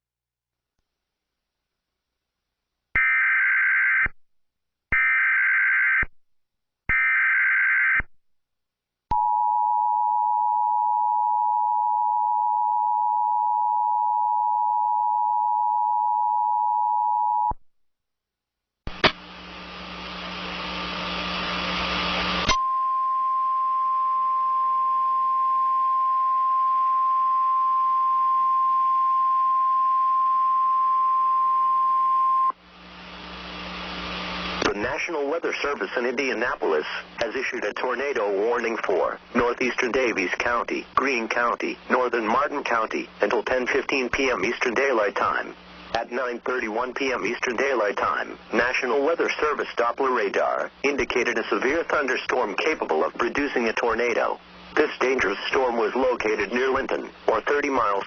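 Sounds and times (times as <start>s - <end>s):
static hiss: 18.9s - 22.6s, 32.6s - 58.0s.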